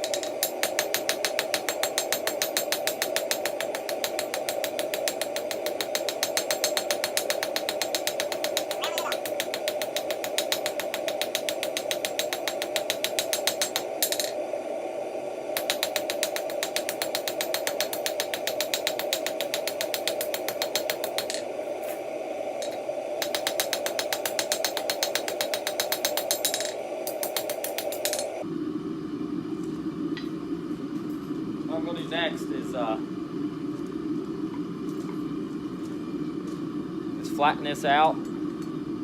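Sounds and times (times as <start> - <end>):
hammer striking hot steel on anvil: 0.0 - 14.4, 15.6 - 21.4, 22.6 - 28.4
steady hum: 0.0 - 39.0.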